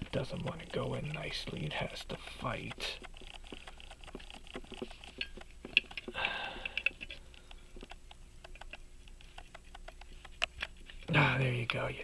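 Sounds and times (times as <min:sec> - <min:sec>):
metallic clicks of watch parts: 0:02.5 - 0:10.8.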